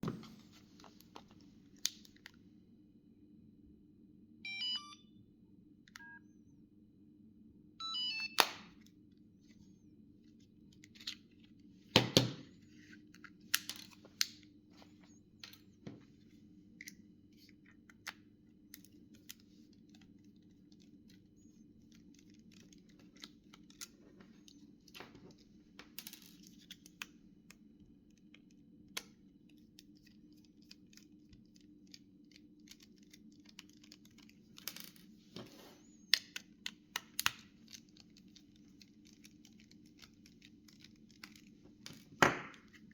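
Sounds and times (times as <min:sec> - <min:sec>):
mobile phone electronic beeps: 0:04.5 - 0:05.2, 0:06.0 - 0:06.4, 0:07.8 - 0:08.4.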